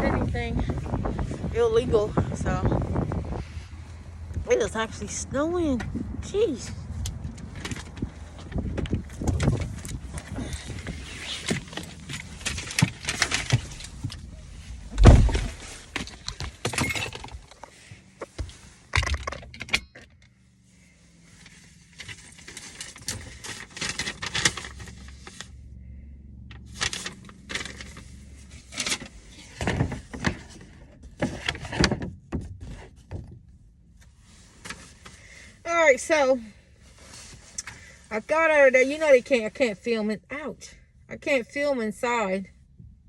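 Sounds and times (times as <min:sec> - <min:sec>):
handling clicks knocks and rustles: 0:05.6 - 0:20.4, 0:21.4 - 0:25.5, 0:26.5 - 0:35.2.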